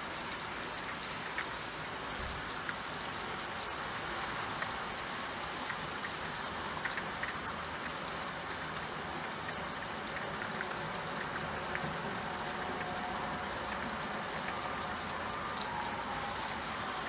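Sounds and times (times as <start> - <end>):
steady rain hiss: 0.0 - 17.0
raindrops ticking: 4.5 - 17.0.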